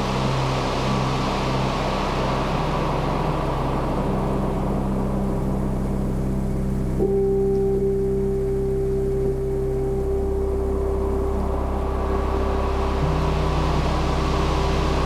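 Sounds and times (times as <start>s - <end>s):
steady higher tone: 0.0s - 15.0s
speed boat engine humming: 0.1s - 15.0s
wind and water rushing: 11.9s - 15.0s.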